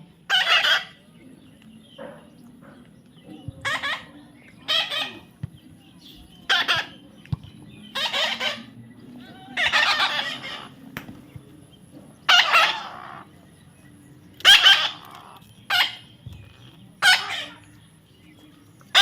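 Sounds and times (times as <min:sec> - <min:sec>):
parrot squawking: 0:00.3 - 0:01.0, 0:04.7 - 0:05.3, 0:06.5 - 0:06.9, 0:08.0 - 0:08.7, 0:09.4 - 0:10.7, 0:12.3 - 0:13.3, 0:14.4 - 0:16.0, 0:17.0 - 0:17.6.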